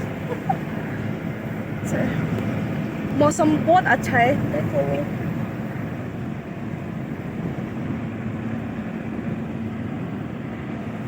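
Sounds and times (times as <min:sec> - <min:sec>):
vehicle engine and road rumble: 0:00.0 - 0:11.0.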